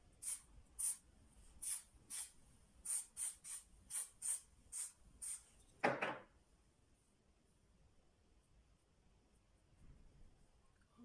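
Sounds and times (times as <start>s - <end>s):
aerosol hair spray hissing: 0.2s - 1.0s, 1.6s - 5.4s.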